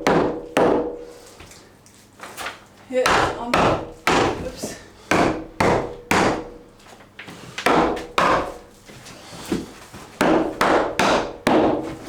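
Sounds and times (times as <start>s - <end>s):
hammer striking timber panels: 0.0s - 1.1s, 3.0s - 6.7s, 7.6s - 8.7s, 10.2s - 12.0s.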